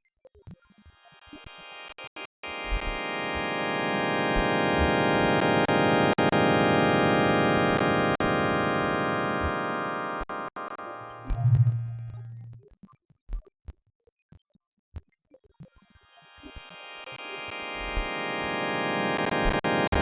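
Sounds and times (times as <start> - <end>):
synthesized tone cluster: 2.5 - 12.6.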